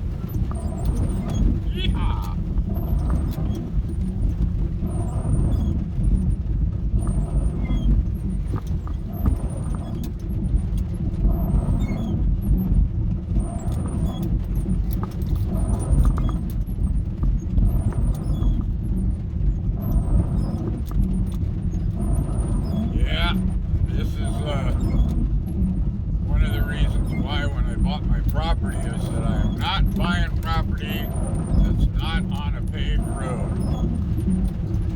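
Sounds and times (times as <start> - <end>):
van engine rumble: 21.6 - 34.9.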